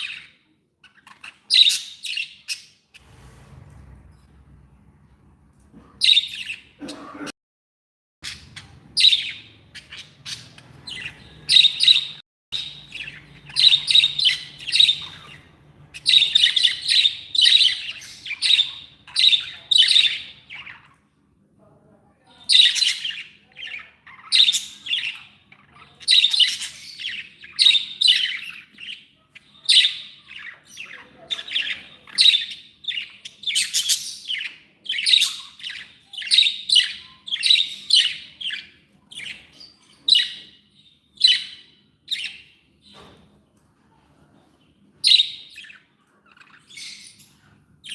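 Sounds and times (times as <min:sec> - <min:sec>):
budgerigars chirping and warbling: 0:00.0 - 0:04.3, 0:06.0 - 0:07.0, 0:08.2 - 0:21.0, 0:22.3 - 0:43.2, 0:44.8 - 0:47.9.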